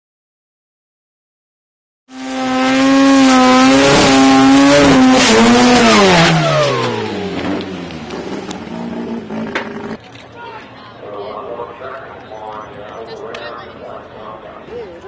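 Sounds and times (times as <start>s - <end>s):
rotary engine revving: 2.1s - 10.0s.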